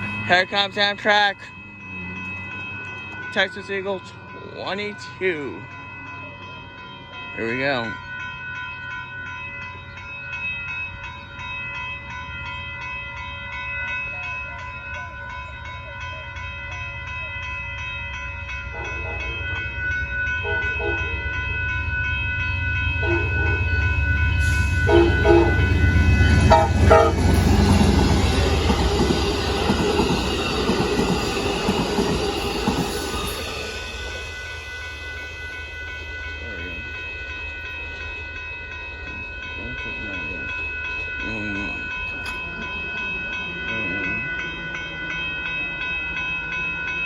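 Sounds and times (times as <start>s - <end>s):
railroad crossing bell ringing: 0.0s - 47.0s
train rumbling and clacking: 0.0s - 47.0s
locomotive horn blasts: 20.4s - 21.4s, 23.0s - 27.8s.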